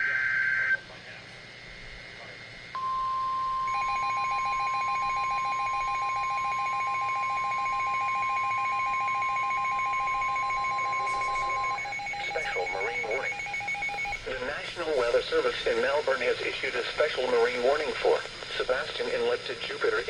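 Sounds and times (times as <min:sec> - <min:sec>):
rapidly pulsing beep: 0:02.8 - 0:14.6
steady high alarm beep: 0:02.8 - 0:16.0.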